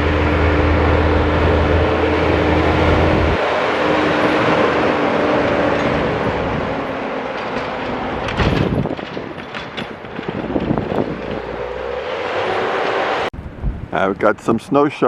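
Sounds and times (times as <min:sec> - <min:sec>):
truck engine humming: 0:00.0 - 0:13.6
knocks and rattles: 0:05.4 - 0:12.0.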